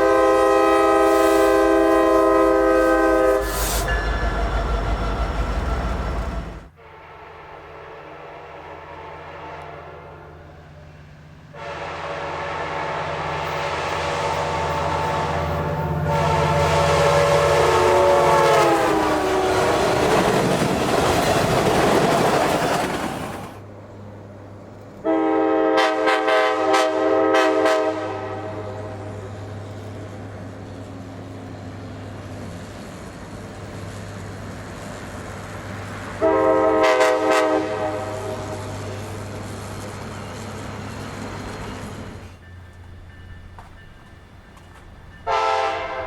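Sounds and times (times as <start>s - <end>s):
train rumbling and clattering: 0.0s - 6.8s, 12.7s - 25.1s, 25.9s - 46.0s
locomotive horn: 0.0s - 10.9s, 11.5s - 20.4s, 25.0s - 29.2s, 36.2s - 39.0s, 45.2s - 46.0s
locomotive engine hum: 0.0s - 46.0s.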